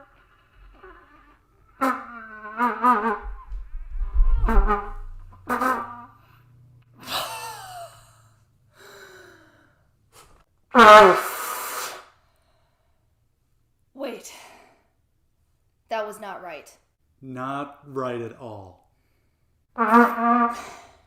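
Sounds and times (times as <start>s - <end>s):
squawking trumpet blasts: 1.6s - 6.4s, 19.8s - 20.8s.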